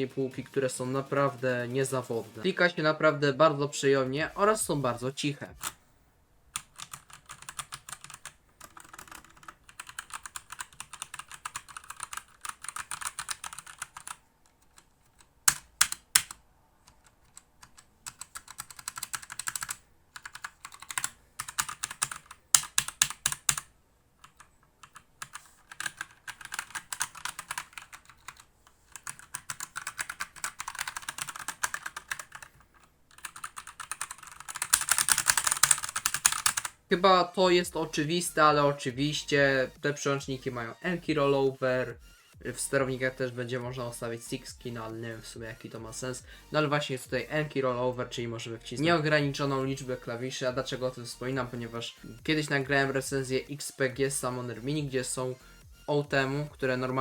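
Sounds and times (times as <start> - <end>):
typing on mechanical keyboard: 6.6 - 36.8.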